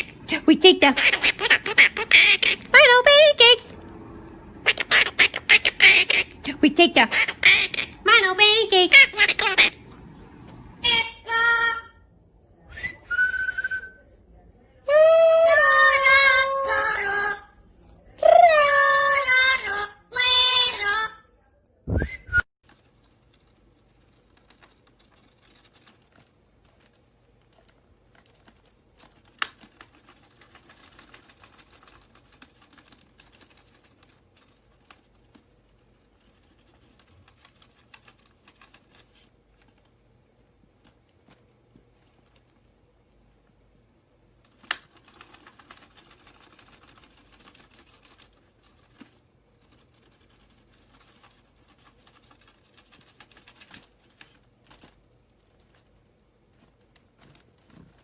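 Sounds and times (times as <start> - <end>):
faint clicking and scratching: 22.6 - 58.0.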